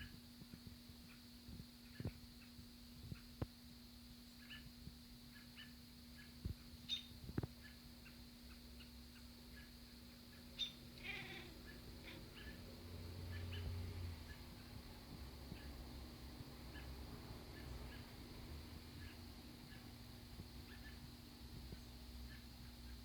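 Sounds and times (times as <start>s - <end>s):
birds chirping: 0.9s - 23.0s
cat chirping: 10.4s - 14.7s, 20.6s - 21.1s.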